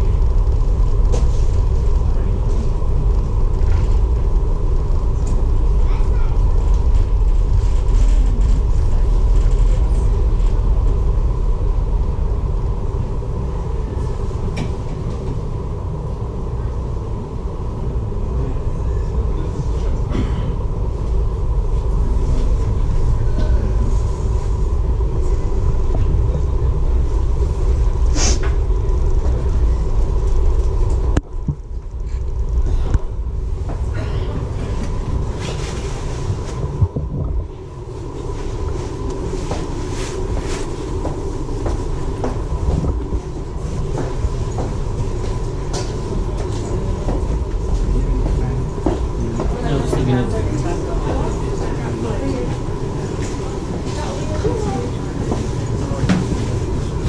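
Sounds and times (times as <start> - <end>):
constant hum: 0.0 - 57.0
ferry engines rumbling: 0.0 - 57.0.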